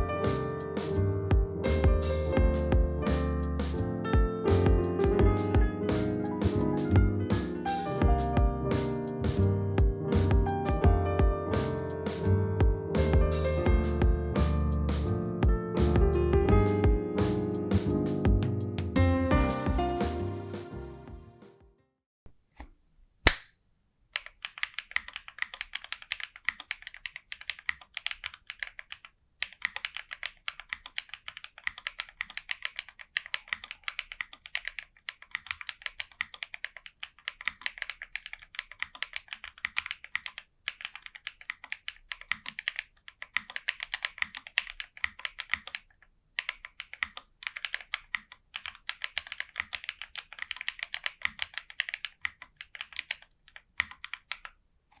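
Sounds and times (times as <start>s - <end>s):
sharp click: 22.6s - 23.6s
mechanical keyboard typing: 24.2s - 55.0s.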